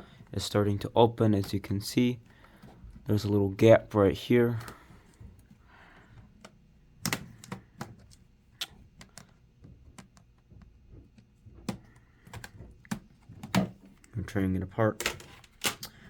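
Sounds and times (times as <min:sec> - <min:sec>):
plastic clips clicking loose: 0:15.0 - 0:16.0.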